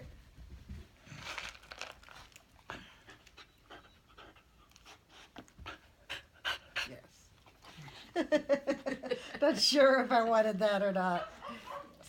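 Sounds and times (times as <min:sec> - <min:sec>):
dog panting: 0:03.0 - 0:09.3.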